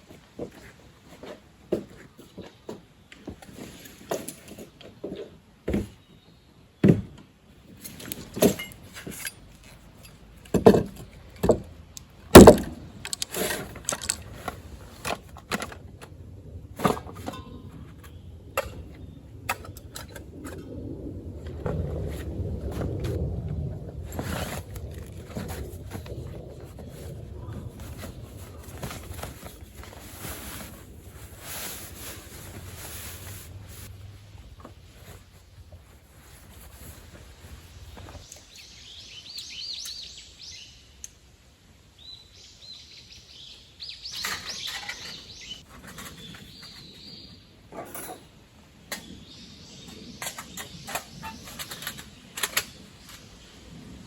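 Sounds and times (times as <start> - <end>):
camp gear knocks and clicks: 6.8 - 16.1
small birds chirping trills: 38.3 - 41.1.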